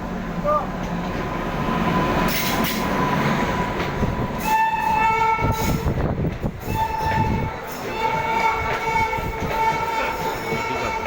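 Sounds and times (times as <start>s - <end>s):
train wheels rumbling on rails: 0.0s - 11.0s
locomotive horn blast: 4.4s - 6.0s, 6.7s - 11.0s.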